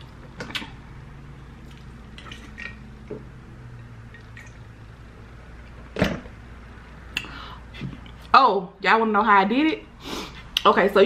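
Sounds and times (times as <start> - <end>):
wet chewing and mouth noises: 0.0 - 0.8, 1.6 - 2.8.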